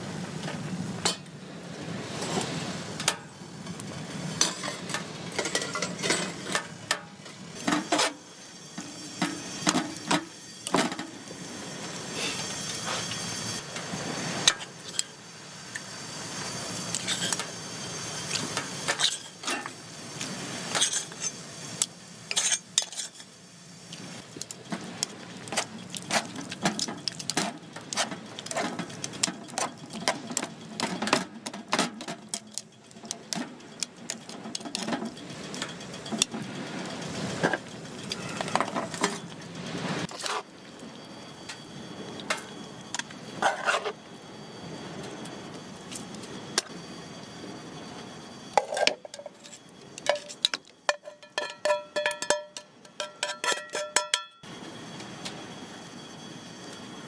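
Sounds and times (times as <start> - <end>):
metal utensils clinking on pots: 4.4 - 11.1, 22.3 - 23.3, 48.6 - 54.4.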